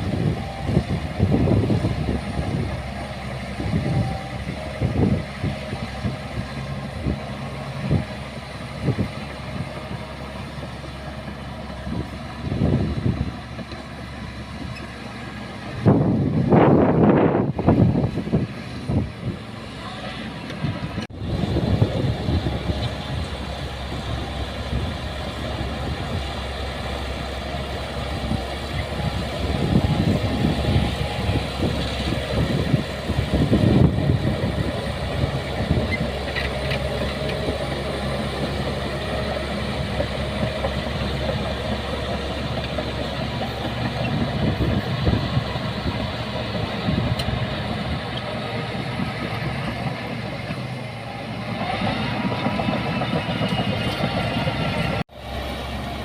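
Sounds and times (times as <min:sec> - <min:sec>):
diesel engine running: 0:00.0 - 0:56.0.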